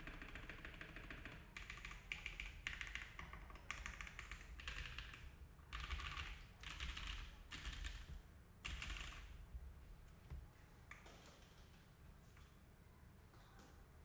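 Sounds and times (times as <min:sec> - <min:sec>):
typing on mechanical keyboard: 0:00.0 - 0:09.4.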